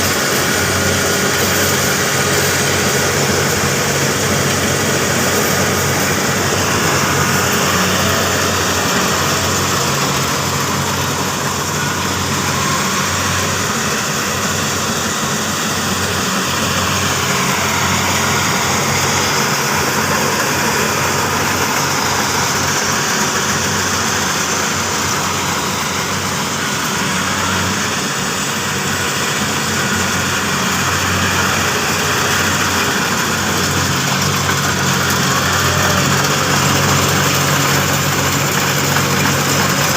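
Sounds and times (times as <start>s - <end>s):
combine harvester engine hum: 0.0s - 39.9s.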